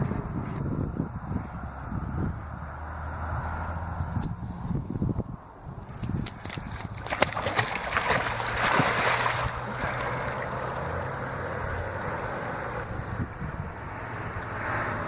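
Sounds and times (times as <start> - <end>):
water splashing and churning: 5.8 - 13.0.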